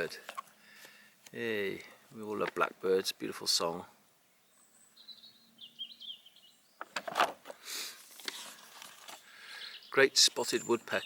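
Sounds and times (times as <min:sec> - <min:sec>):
small bird twittering: 0:04.4 - 0:06.8
book pages rustling: 0:06.9 - 0:09.3.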